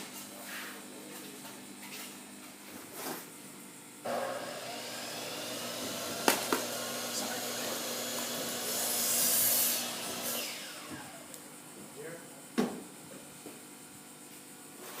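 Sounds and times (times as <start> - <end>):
small motor with air rush: 4.0 - 11.4
loud hiss: 4.1 - 11.3.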